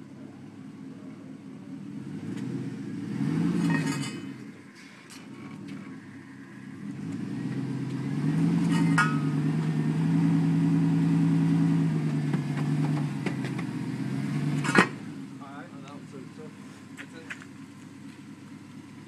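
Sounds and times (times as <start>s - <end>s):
pickup truck engine running: 4.3s - 19.0s.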